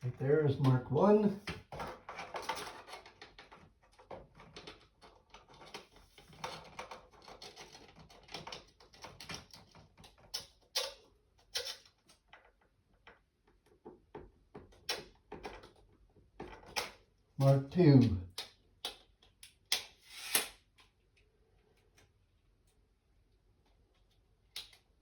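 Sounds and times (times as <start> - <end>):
tape measure and pen scratching: 19.9 - 20.6.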